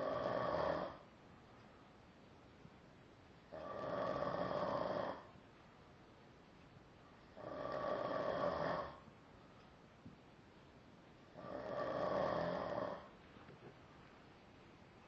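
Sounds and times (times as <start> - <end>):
person snoring: 0.0 - 1.0, 3.5 - 5.3, 7.4 - 9.0, 11.4 - 13.1.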